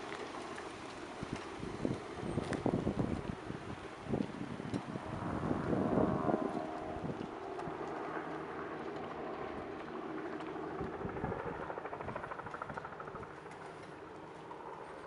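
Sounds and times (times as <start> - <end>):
wind buffeting microphone: 0.4 - 15.0
distant motor running: 4.9 - 15.0.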